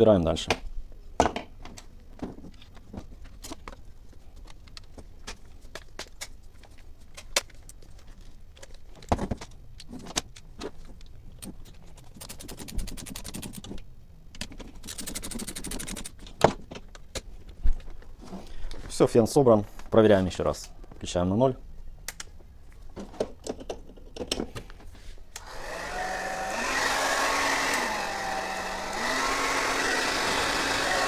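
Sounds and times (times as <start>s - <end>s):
plastic parts clicking and knocking: 23.0s - 24.8s.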